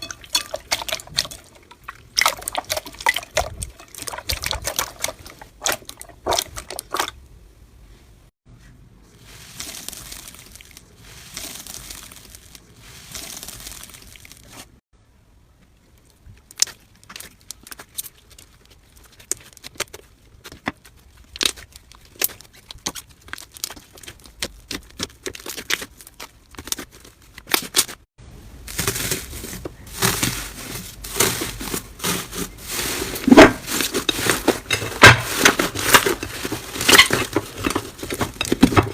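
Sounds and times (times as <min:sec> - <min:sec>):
slime rustling stretch: 0:09.1 - 0:14.8, 0:16.0 - 0:38.9
slime clicks and crackles: 0:16.0 - 0:27.9.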